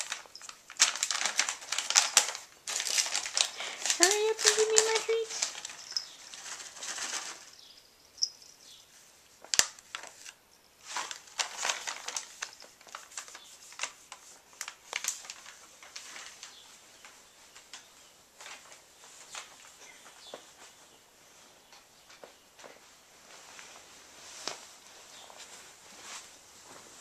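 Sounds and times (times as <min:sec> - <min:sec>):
rabbit crunching hay: 0:00.0 - 0:07.8.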